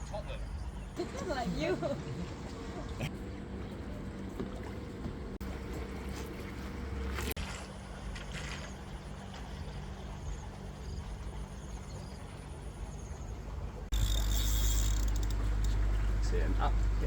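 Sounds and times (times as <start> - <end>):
insect chirping: 13.9 - 15.7.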